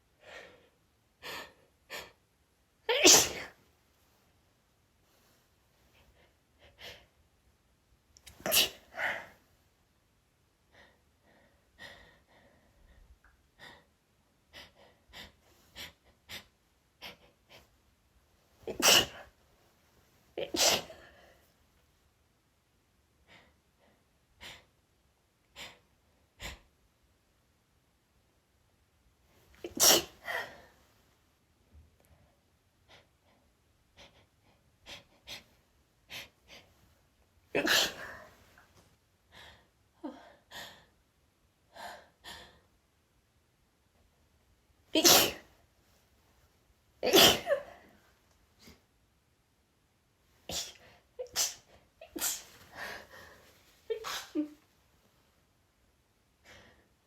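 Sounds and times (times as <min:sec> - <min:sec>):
woman sneezing: 0:02.9 - 0:03.6, 0:08.3 - 0:09.2, 0:18.7 - 0:19.3, 0:20.4 - 0:21.0, 0:29.6 - 0:30.5, 0:37.6 - 0:38.2, 0:45.0 - 0:45.5, 0:47.0 - 0:47.8, 0:50.5 - 0:52.7, 0:53.9 - 0:54.6.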